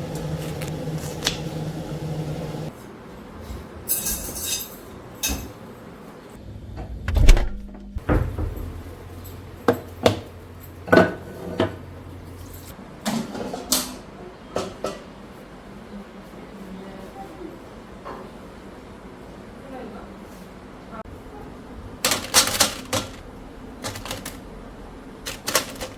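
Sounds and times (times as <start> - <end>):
low hum: 0.0 - 2.7, 6.4 - 9.7
kitchen knocks and clicks: 14.6 - 15.1, 22.1 - 24.4.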